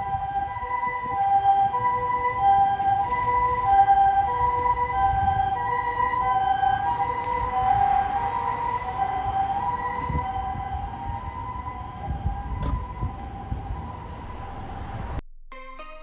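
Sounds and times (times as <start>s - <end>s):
two-tone siren: 0.0s - 15.2s
low vehicle rumble: 3.0s - 15.2s.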